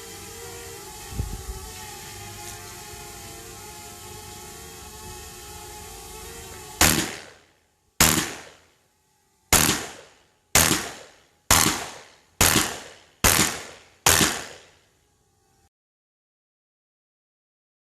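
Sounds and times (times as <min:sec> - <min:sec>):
steady tonal hum: 0:00.0 - 0:15.7
shotgun shots: 0:06.8 - 0:07.4, 0:08.0 - 0:08.6, 0:09.5 - 0:14.8.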